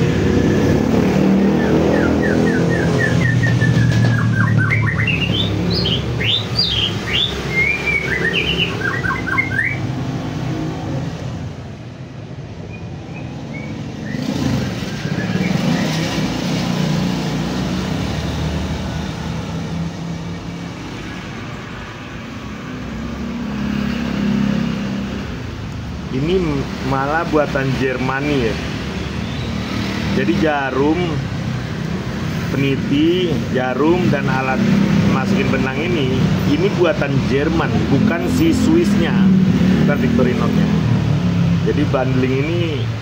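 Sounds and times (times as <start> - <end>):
low traffic rumble: 0.0 - 43.0
small bird chirping: 1.5 - 9.9, 12.6 - 16.2.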